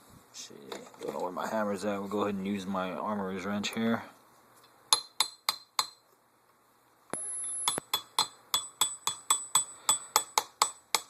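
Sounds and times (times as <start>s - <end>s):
wrench tapping steel pin punch: 7.4s - 11.0s.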